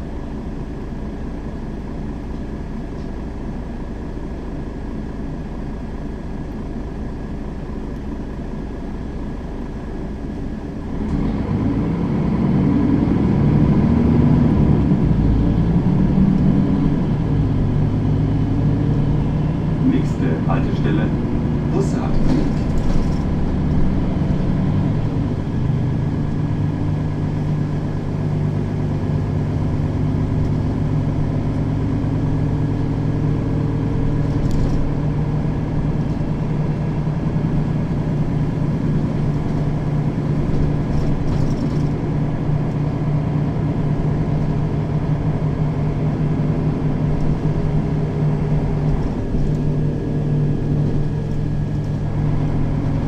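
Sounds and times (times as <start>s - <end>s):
bus engine running: 0.0s - 53.0s.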